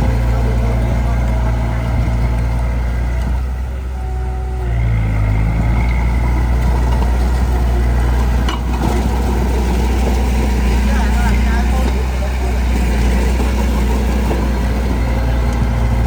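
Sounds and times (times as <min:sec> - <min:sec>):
heavy diesel engine running: 0:00.0 - 0:16.0.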